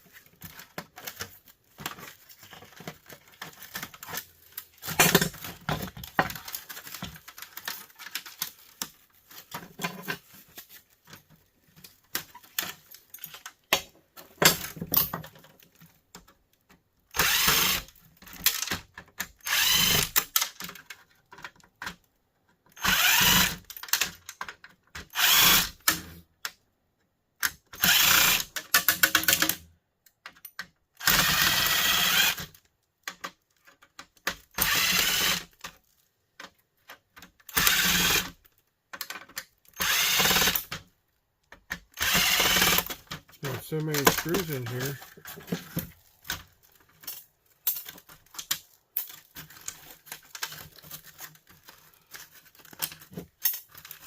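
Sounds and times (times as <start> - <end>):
plastic parts clicking and rattling: 0.0 - 54.0
drill-driver backing out screws: 17.1 - 17.9, 19.4 - 20.3, 22.8 - 23.7, 27.8 - 29.5, 31.0 - 32.4, 34.5 - 35.5, 37.5 - 38.4, 39.8 - 40.7, 42.0 - 43.1.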